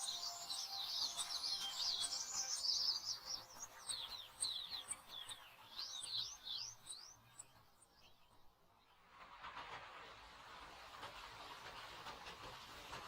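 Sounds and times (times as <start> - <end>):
songbirds chirping: 0.0 - 9.0.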